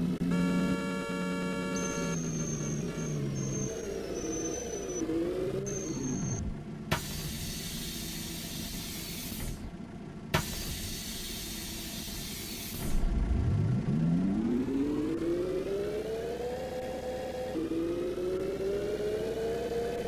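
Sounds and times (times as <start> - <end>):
bus drive whine: 0.0 - 20.0
pneumatic door air hiss: 7.0 - 9.6, 10.4 - 12.9.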